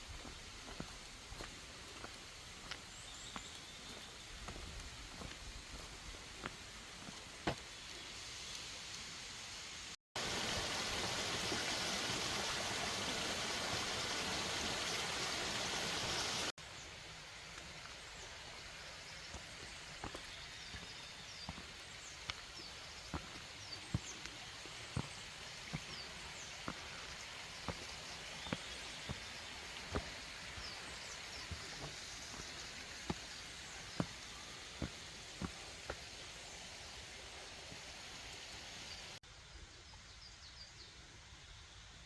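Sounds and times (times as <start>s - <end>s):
mountain stream flowing: 0.0s - 39.2s
small birds chirping: 0.2s - 8.7s, 17.9s - 39.2s.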